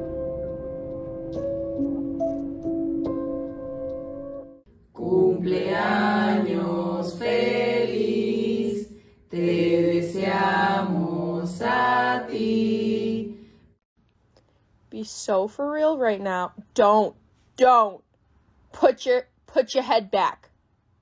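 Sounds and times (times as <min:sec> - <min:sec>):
soft instrumental music: 0:00.0 - 0:04.7
chant-like singing: 0:05.0 - 0:13.6.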